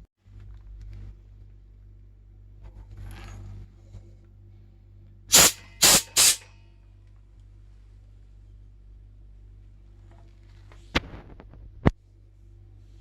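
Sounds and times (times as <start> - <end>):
compressed air blasts hissing: 5.3 - 6.4
compressor humming: 5.3 - 6.4.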